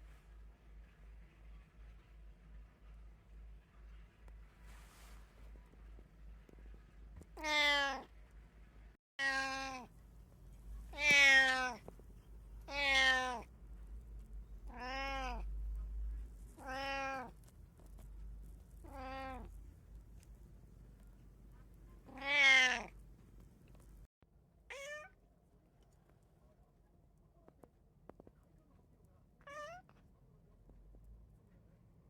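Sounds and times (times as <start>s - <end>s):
cat meowing: 7.3s - 8.1s, 9.2s - 9.9s, 10.9s - 11.9s, 12.6s - 13.5s, 14.6s - 15.5s, 16.5s - 17.4s, 18.8s - 19.5s, 22.1s - 23.0s, 24.7s - 25.2s, 29.5s - 29.9s.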